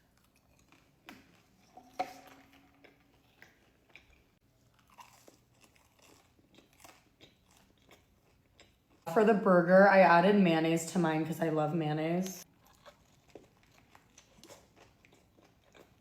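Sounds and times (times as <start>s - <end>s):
chewing crunchy food: 0.0s - 1.7s, 2.4s - 9.1s, 12.4s - 16.0s.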